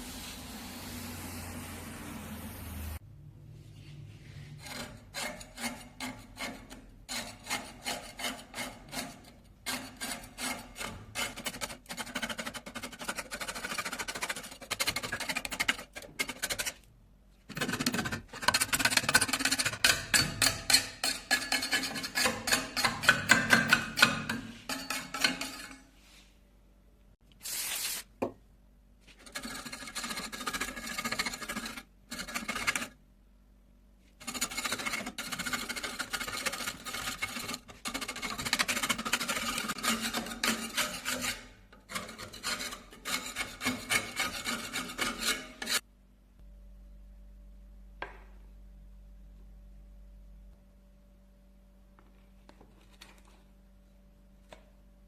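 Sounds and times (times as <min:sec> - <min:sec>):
hand tool scrubbing rusty steel: 0:17.6 - 0:25.8, 0:34.2 - 0:45.8.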